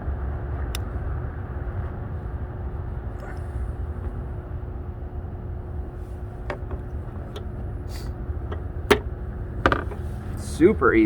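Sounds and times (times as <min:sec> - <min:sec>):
steady low rumble: 0:00.0 - 0:11.0
sharp clicks and knocks: 0:06.4 - 0:07.6, 0:08.4 - 0:10.1.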